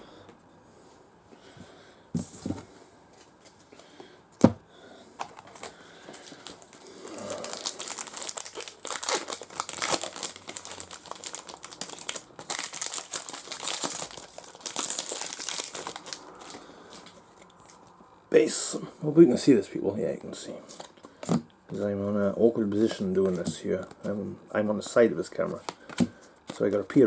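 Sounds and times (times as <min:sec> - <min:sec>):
wrapper crinkling and tearing: 0:05.2 - 0:17.8.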